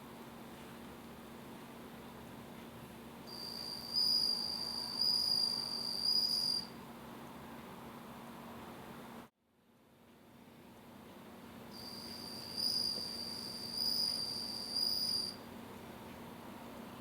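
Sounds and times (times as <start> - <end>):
faint steady hum: 0.0 - 17.0
cricket trilling: 3.3 - 6.7, 11.8 - 15.4.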